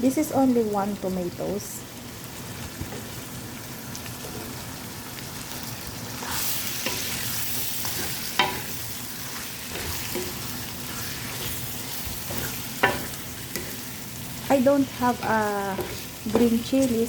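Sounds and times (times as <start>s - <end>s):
food sizzling in a pan: 0.0s - 17.0s.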